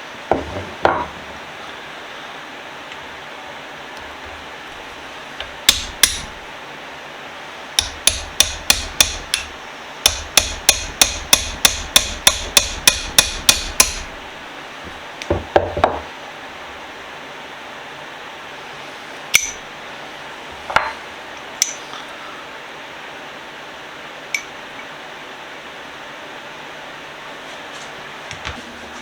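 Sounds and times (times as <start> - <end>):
hammer striking metal: 5.7 - 6.4, 7.8 - 14.2, 19.4 - 19.6
dull knocks: 14.9 - 16.0.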